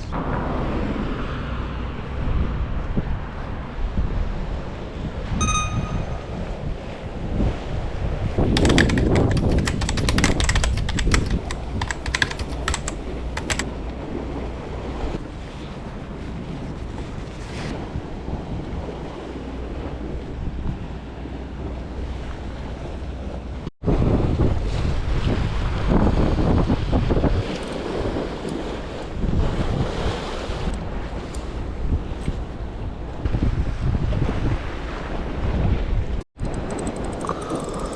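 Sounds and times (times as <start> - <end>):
sharp clicks and rattles: 8.2 - 13.6, 36.4 - 37.9.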